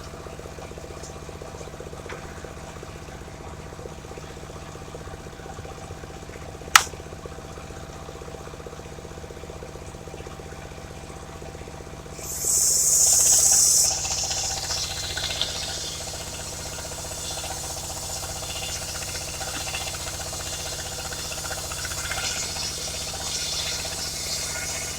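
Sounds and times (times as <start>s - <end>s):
sawmill engine running: 12.1s - 24.9s
loud hiss: 12.2s - 24.9s.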